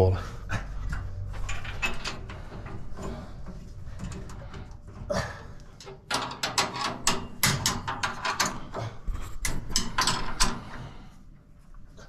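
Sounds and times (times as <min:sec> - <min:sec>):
metal parts clattering: 0:01.3 - 0:03.2, 0:05.8 - 0:10.6.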